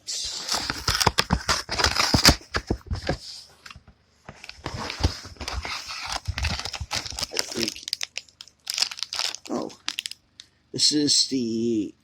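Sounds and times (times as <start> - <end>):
packaging rustling and crinkling: 0.4 - 3.2, 4.3 - 10.2.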